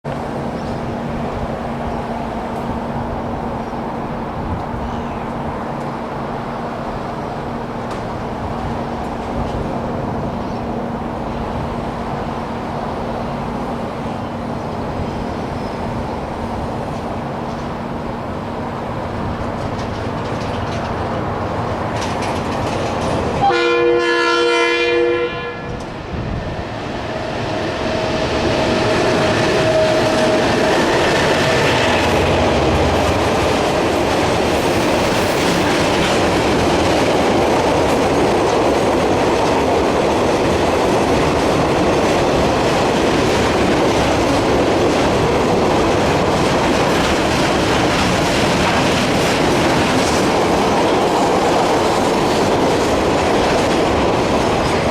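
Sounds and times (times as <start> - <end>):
wheels clacking over rail joints: 15.6 - 23.6, 27.0 - 54.9
locomotive horn chord: 23.4 - 25.8.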